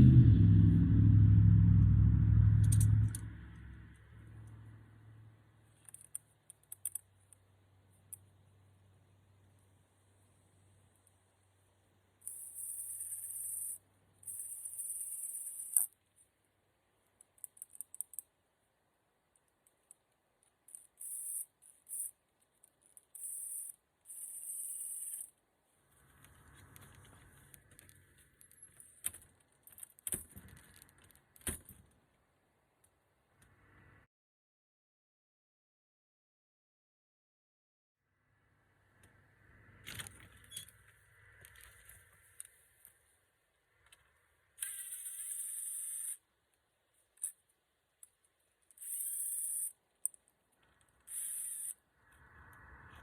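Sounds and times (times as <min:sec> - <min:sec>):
faint low hum: 0:00.0 - 0:34.1
sharp metal clicks: 0:02.6 - 0:03.8.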